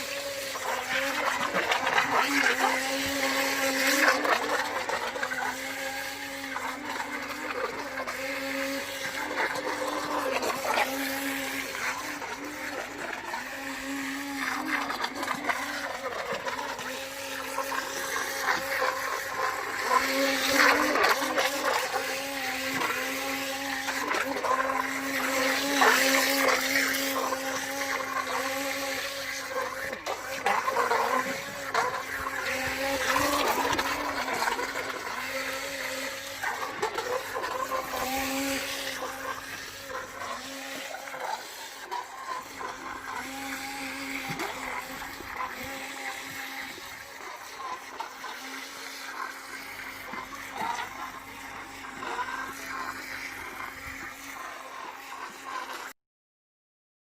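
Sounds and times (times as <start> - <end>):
small electric motor whining: 0.0 - 56.0.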